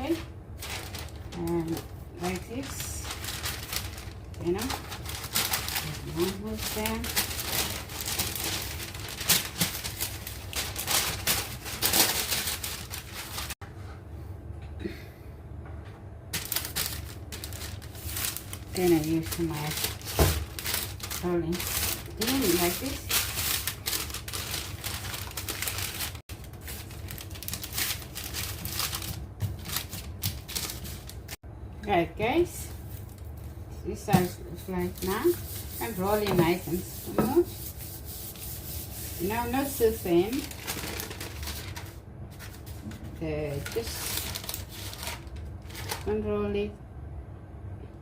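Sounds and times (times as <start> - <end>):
baking paper crinkling: 0.0 - 13.6, 16.3 - 31.4, 32.7 - 46.3
rolling pin on dough: 34.1 - 40.4.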